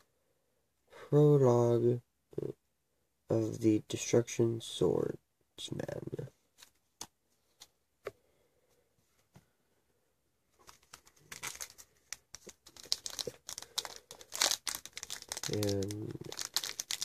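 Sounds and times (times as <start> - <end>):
foil wrapper crinkling and tearing: 10.6 - 17.0.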